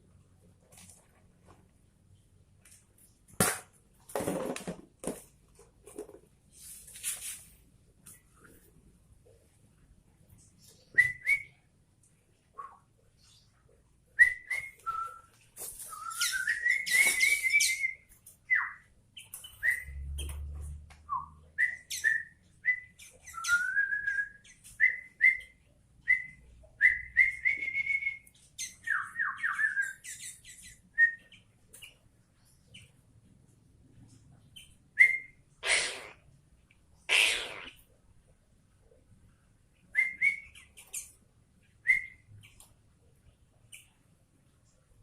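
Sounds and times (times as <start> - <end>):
bird whistling song: 10.6 - 11.6, 14.2 - 20.3, 21.0 - 31.4, 34.6 - 35.4, 39.9 - 41.1, 41.8 - 42.3.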